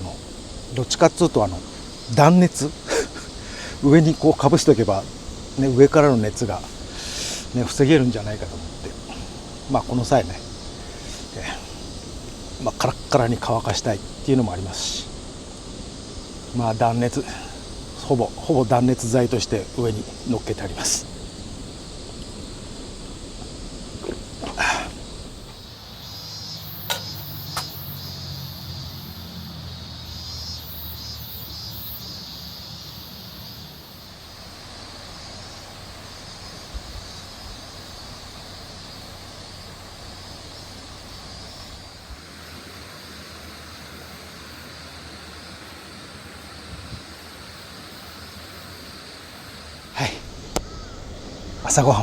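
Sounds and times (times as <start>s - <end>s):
vehicle engine droning: 0.0s - 31.2s, 33.6s - 47.0s
steady high buzzing: 0.0s - 52.0s
sharp clicks: 50.5s - 50.8s.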